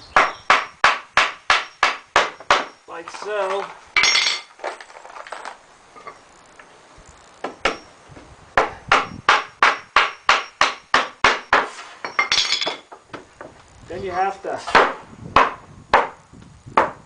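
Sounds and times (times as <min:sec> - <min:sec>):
hammer striking nails into wood: 0:00.2 - 0:02.8, 0:08.6 - 0:11.7, 0:14.7 - 0:16.2.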